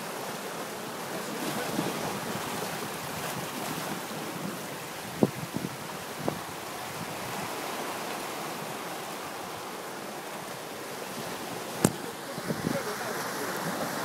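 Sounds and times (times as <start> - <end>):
sea surf washing onto shore: 0.0 - 14.0
wind buffeting microphone: 1.8 - 7.8, 11.1 - 14.0.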